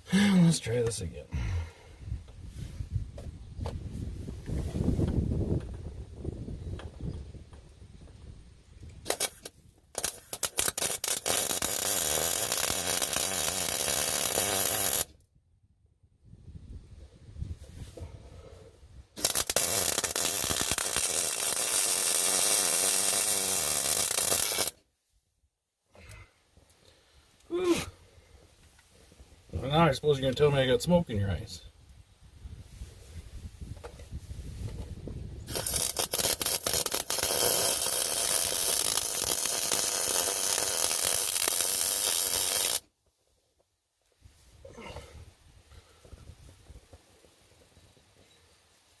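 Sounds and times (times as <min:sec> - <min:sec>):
welder arc crackling: 0:09.1 - 0:15.1, 0:19.2 - 0:24.8, 0:35.5 - 0:42.8.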